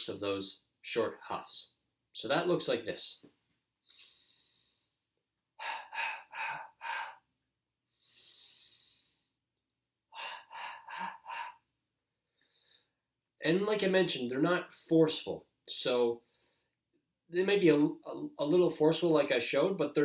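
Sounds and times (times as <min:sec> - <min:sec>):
soft breath in: 0:03.8 - 0:05.0, 0:07.9 - 0:09.4.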